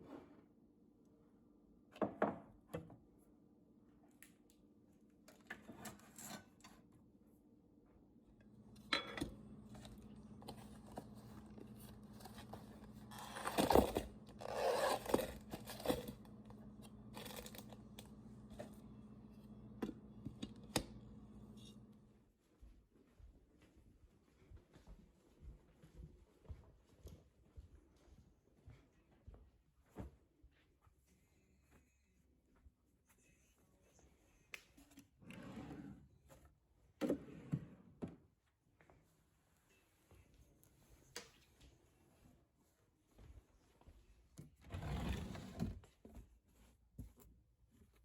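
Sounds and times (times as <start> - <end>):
packaging tearing and crinkling: 13.1 - 16.2, 17.1 - 17.8.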